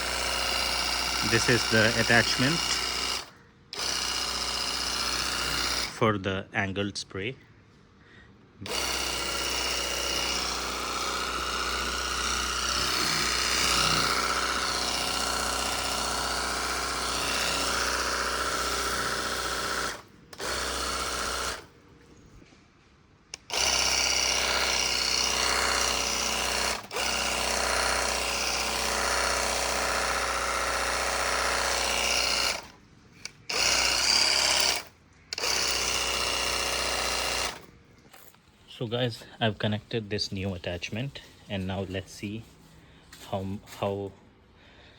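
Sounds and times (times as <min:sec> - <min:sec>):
electric pump running: 0:00.0 - 0:06.0, 0:08.6 - 0:21.8, 0:23.3 - 0:37.7.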